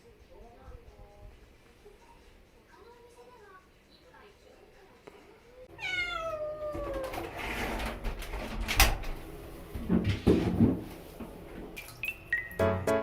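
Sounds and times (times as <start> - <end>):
kitten meowing: 5.8 - 7.1.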